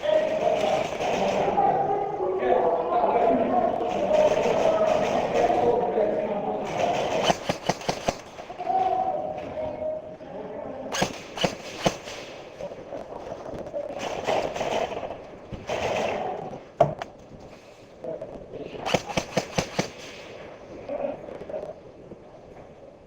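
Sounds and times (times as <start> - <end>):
airsoft gun shots: 6.7 - 8.4, 10.9 - 12.4, 18.8 - 20.3.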